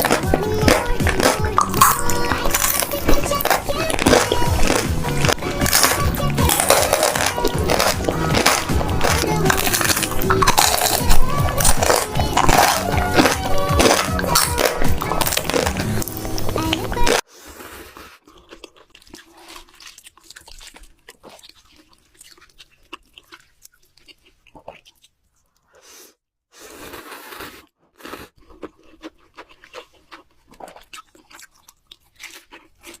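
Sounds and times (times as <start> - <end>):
mouth clicks: 0.0 - 17.2
person chewing crunchy food: 0.0 - 33.0.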